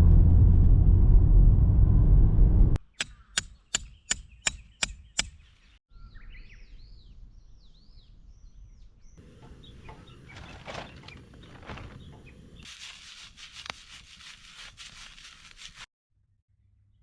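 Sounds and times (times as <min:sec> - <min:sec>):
birds chirping: 0:02.8 - 0:12.7
sharp evenly spaced knocks: 0:03.0 - 0:05.4
faint outdoor ambience: 0:04.7 - 0:13.4.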